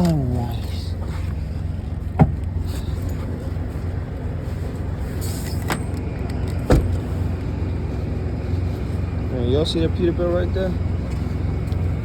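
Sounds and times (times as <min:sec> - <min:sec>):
diesel truck engine idling: 0:00.0 - 0:12.0.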